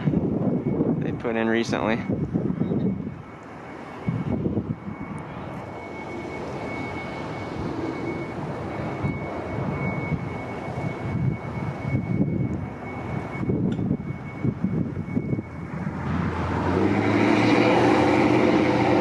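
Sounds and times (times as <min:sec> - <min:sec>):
airplane passing overhead: 0:00.0 - 0:19.0.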